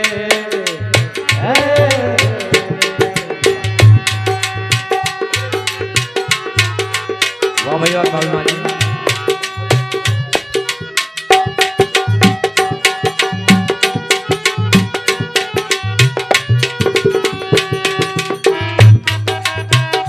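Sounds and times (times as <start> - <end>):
hand drum rhythm: 0.0 - 20.0
held melody notes: 0.0 - 20.0.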